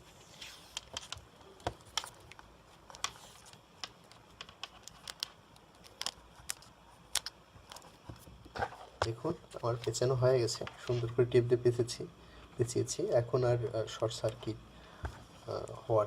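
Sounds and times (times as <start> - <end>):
tape clicking and crackling: 0.7 - 11.1.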